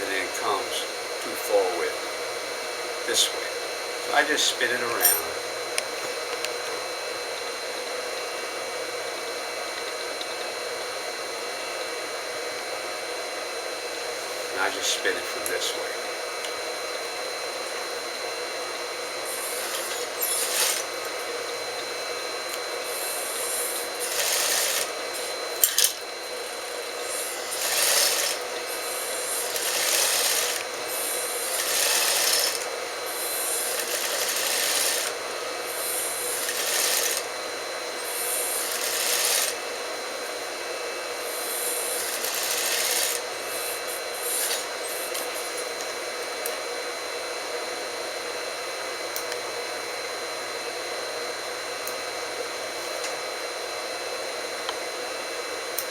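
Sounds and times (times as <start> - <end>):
motor hum: 0.0 - 53.2
sewing machine stitching: 19.3 - 21.2, 22.9 - 37.3, 38.1 - 39.6, 41.4 - 45.5.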